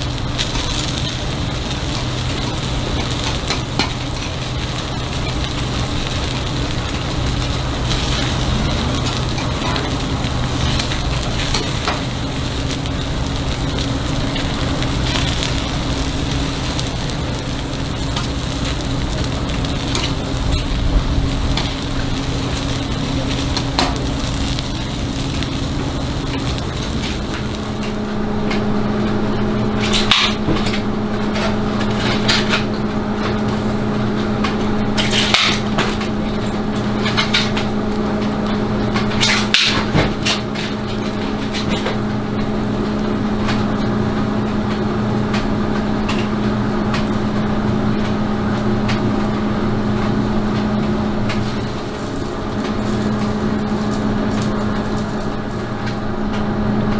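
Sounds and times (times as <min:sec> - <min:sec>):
low machine hum: 0:00.0 - 0:56.9.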